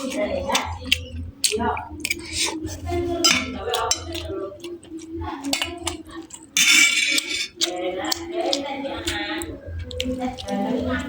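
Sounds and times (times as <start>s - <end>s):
chewing: 0.0s - 11.0s
faint background voice: 0.0s - 11.0s
low hum: 0.0s - 11.0s
cutlery clicking against plate: 5.4s - 8.6s.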